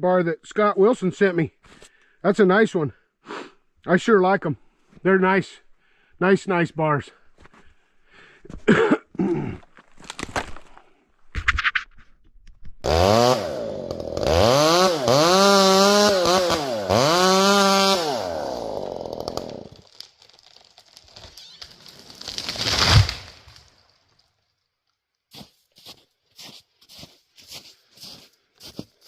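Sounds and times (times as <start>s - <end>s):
chainsaw revving and idling: 12.8s - 19.8s.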